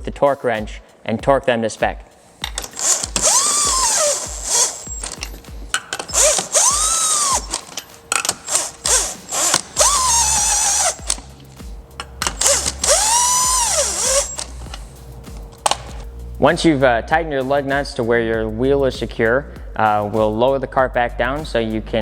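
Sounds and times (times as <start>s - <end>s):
power tool whining: 2.4s - 11.4s, 12.0s - 16.0s
rattling clicks: 2.4s - 16.0s.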